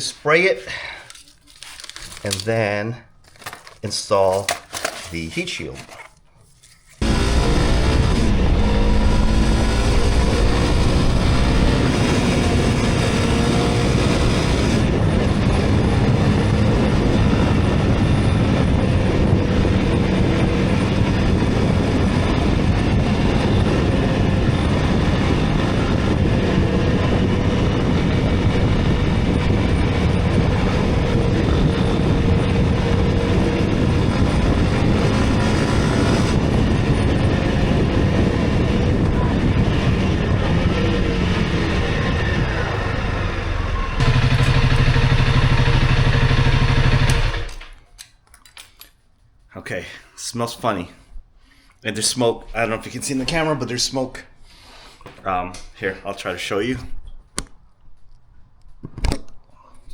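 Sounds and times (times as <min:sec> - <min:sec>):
motorcycle engine running: 0:07.0 - 0:47.6.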